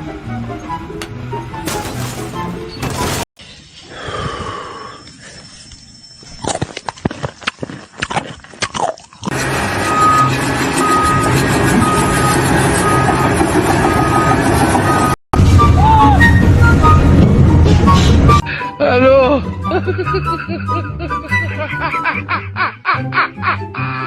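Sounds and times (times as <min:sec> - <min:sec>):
music: 0:00.0 - 0:03.2, 0:15.4 - 0:24.0
heavy machinery running: 0:01.6 - 0:03.3, 0:09.3 - 0:18.4
knocks and clatter: 0:01.6 - 0:03.3
reversing alarm beeps: 0:09.8 - 0:17.1.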